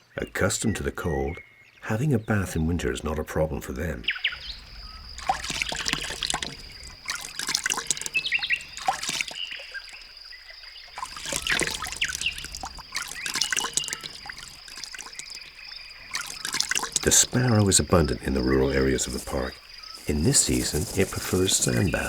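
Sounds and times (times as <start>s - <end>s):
birds chirping: 0.0s - 22.0s
birds splashing in water: 4.1s - 22.0s.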